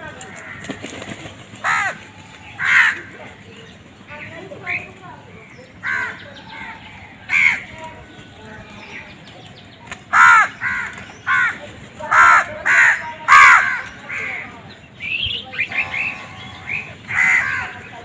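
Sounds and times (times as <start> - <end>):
crow cawing: 0.3 - 0.7, 1.6 - 3.2, 5.8 - 7.8, 10.1 - 14.6, 15.7 - 18.0.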